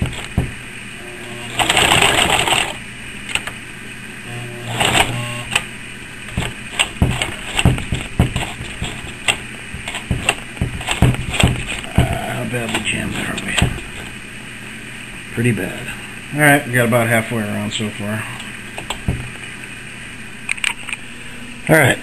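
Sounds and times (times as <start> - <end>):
sewing machine stitching: 1.2 - 2.8, 4.3 - 5.5.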